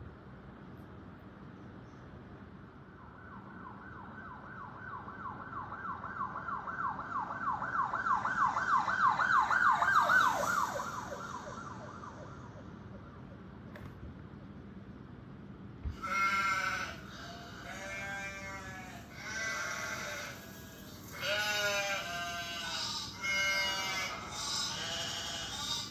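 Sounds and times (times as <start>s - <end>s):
siren yelping: 3.4s - 13.4s.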